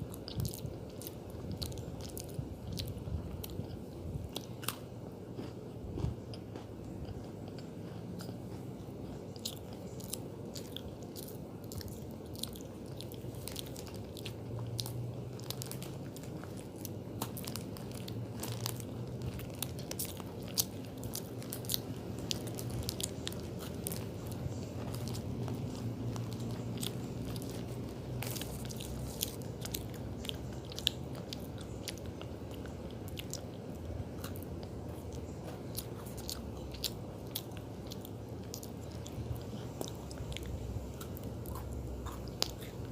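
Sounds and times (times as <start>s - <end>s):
person chewing cookie crunchily: 0.0s - 42.9s.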